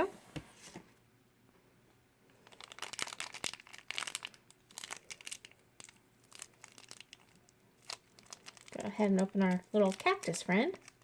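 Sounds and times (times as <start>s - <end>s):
plastic wrapper crinkling and tearing: 2.3s - 11.0s.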